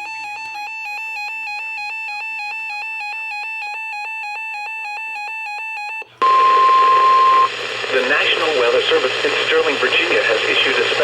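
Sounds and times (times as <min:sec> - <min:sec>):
electronic two-tone warble alarm: 0:00.2 - 0:07.5.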